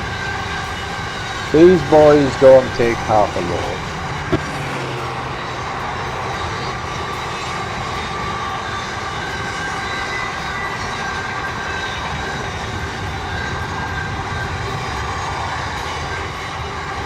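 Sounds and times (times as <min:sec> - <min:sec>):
freight train rumbling past: 0:00.0 - 0:10.2.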